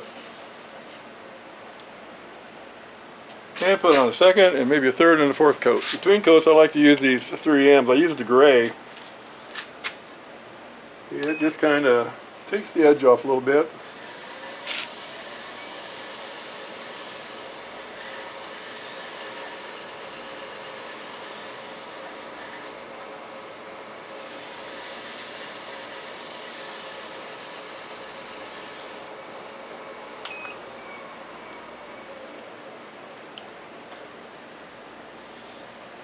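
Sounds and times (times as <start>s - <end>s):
wood lathe motor hum: 11.5s - 35.9s
abrasive pad rubbing spinning wood: 11.8s - 34.6s.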